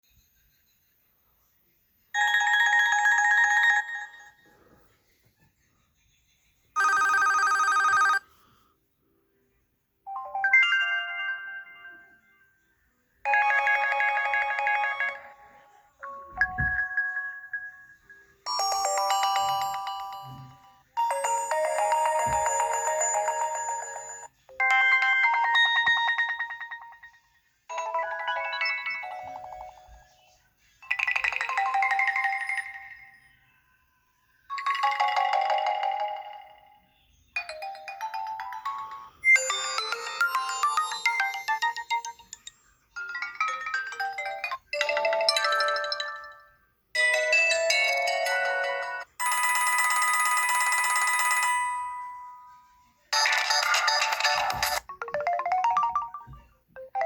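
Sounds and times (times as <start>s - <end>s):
phone ringtone melodies: 2.2s - 4.4s, 6.8s - 8.4s, 13.3s - 30.2s, 30.8s - 33.2s, 34.5s - 36.7s, 37.4s - 57.0s.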